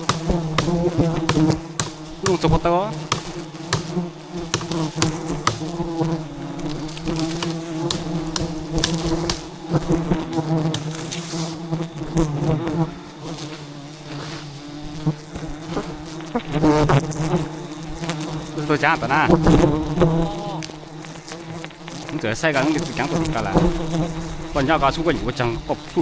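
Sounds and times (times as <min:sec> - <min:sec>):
sharp knocks and clicks: 0:00.0 - 0:02.4, 0:03.1 - 0:03.9, 0:04.5 - 0:05.7, 0:07.2 - 0:09.4
bees buzzing: 0:00.0 - 0:26.0.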